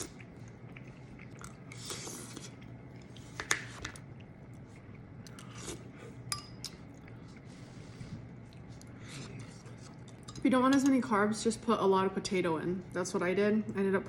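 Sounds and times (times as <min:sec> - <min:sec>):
utensils and dishes clinking: 0:10.1 - 0:11.0.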